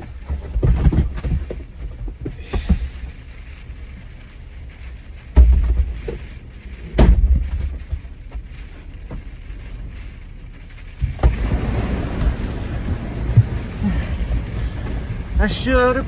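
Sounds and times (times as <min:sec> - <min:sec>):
wind noise rumble: 0:00.0 - 0:16.0
loud thumps with rumble: 0:05.3 - 0:06.2, 0:06.8 - 0:08.5.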